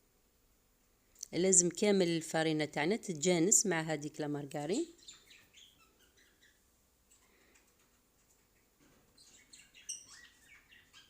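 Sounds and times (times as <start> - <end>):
faint bird chirping: 4.6 - 11.0.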